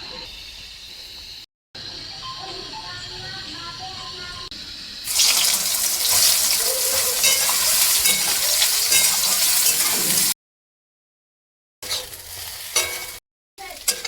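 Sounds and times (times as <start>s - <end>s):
food sizzling in hot oil: 4.9s - 10.4s, 11.8s - 14.0s.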